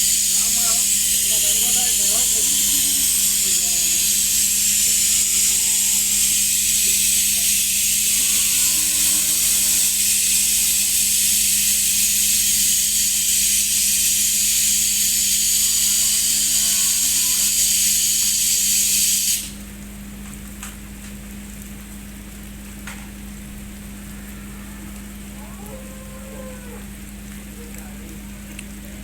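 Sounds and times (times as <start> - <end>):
steady low hum: 0.0 - 12.8
loud high hiss: 0.0 - 19.6.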